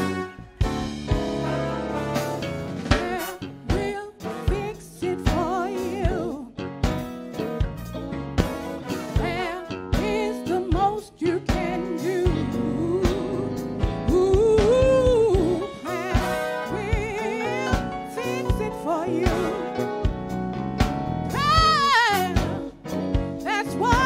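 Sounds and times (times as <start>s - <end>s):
gospel instrumental backing: 0.0s - 24.0s
person singing with vibrato: 9.0s - 20.0s.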